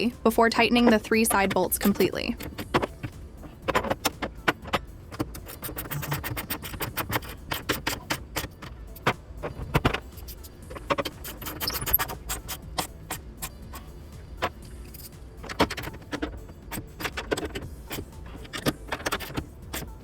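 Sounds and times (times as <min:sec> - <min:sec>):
ratchet wrench clicking: 0:10.1 - 0:13.9.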